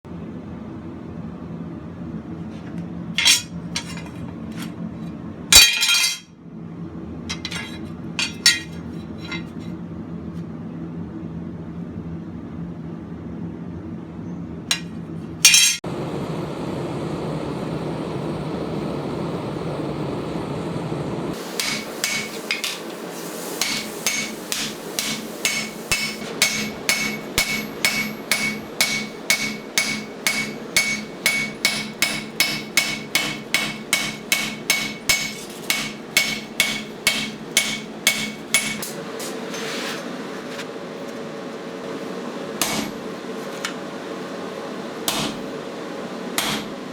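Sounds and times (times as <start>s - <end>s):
hammer striking hot steel on anvil: 3.2s - 4.7s, 5.5s - 6.3s, 7.3s - 9.6s, 14.7s - 15.8s, 21.3s - 23.0s, 23.6s - 39.6s, 42.6s - 43.8s, 45.1s - 45.6s, 46.4s - 46.9s.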